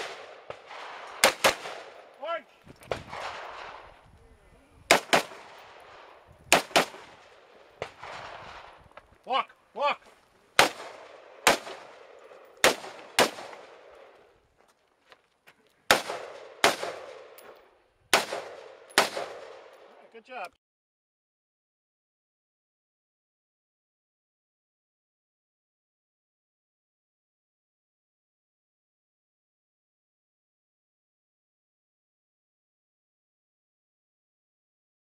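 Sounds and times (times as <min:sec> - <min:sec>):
rifle shots echoing: 0:00.0 - 0:02.4, 0:03.0 - 0:04.0, 0:04.8 - 0:08.8, 0:10.6 - 0:14.2, 0:15.9 - 0:20.0.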